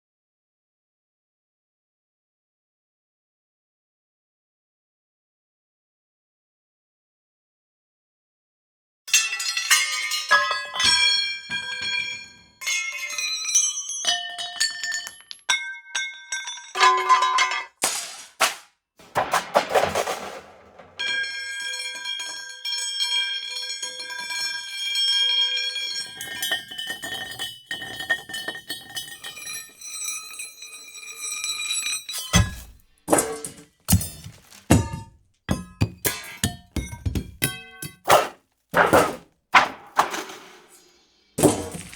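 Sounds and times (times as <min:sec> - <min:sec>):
metal clanging on concrete: 0:09.1 - 0:18.4, 0:19.0 - 0:40.7, 0:41.4 - 0:41.9
metal rolling on concrete: 0:09.2 - 0:18.0, 0:19.0 - 0:38.2
metal thudding on dirt: 0:17.8 - 0:21.2, 0:32.3 - 0:40.2, 0:41.4 - 0:41.9.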